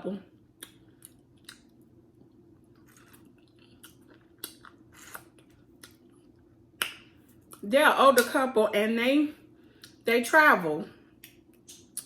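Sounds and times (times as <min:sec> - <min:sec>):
wet mouth chewing clicks: 0:11.2 - 0:12.0.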